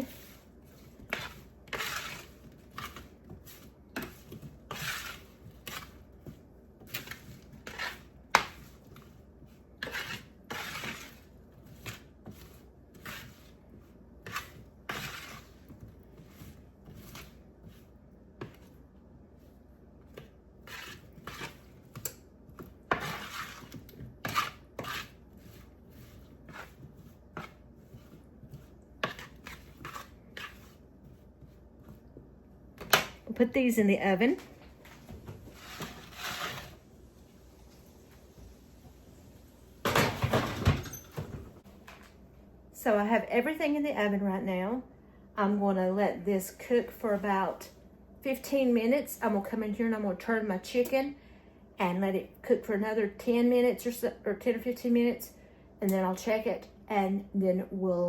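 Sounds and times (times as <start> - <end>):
utensil scraping a baking sheet: 0.0 - 18.8, 20.1 - 32.0, 33.5 - 36.9.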